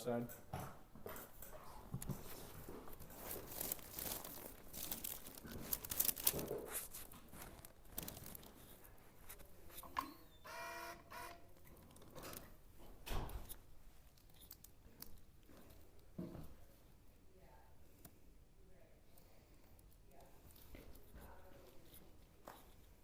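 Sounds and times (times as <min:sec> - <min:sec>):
crinkling and rustling: 0:01.2 - 0:09.9, 0:11.6 - 0:16.8.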